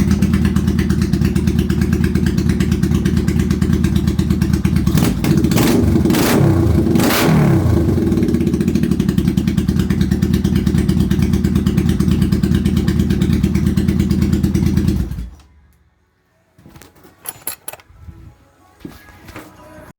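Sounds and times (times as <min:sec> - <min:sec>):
motorcycle engine running: 0:00.0 - 0:15.4.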